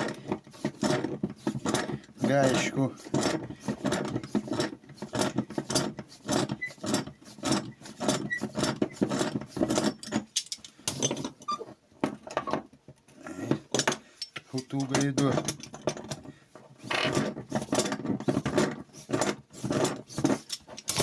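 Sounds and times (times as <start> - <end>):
wrench metallic clicks and knocks: 13.7 - 16.2, 20.3 - 21.0.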